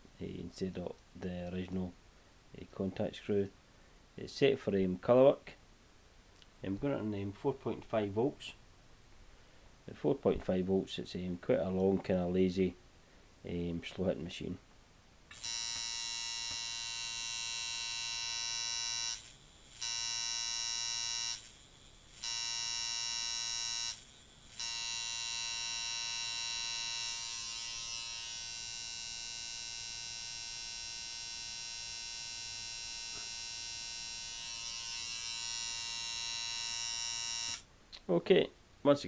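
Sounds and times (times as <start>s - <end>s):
tattoo machine buzzing: 15.3s - 37.7s.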